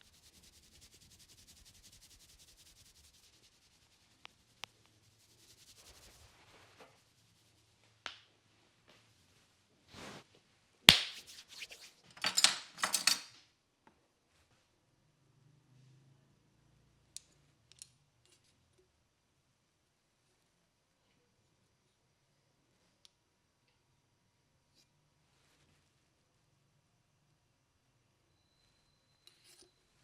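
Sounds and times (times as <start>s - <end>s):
hands rubbing head: 0.0s - 7.7s, 10.9s - 12.1s
scratchy rubbing through hair: 0.0s - 7.9s, 9.9s - 10.2s, 10.9s - 12.1s.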